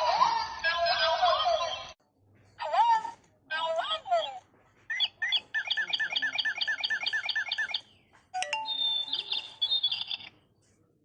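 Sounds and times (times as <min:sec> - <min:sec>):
electronic toy bird chirps: 0:04.9 - 0:07.8, 0:08.4 - 0:10.3.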